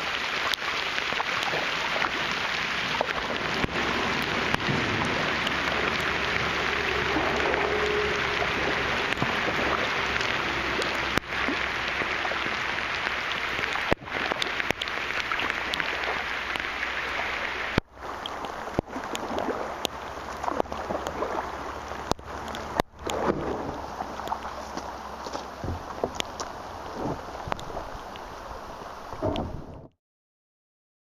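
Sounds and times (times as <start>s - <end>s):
heavy rain on water: 0.0s - 29.9s.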